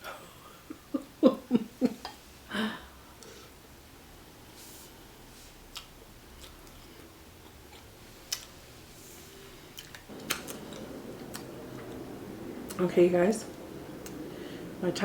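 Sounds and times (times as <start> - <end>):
chewing: 5.7 - 8.6, 9.8 - 12.8.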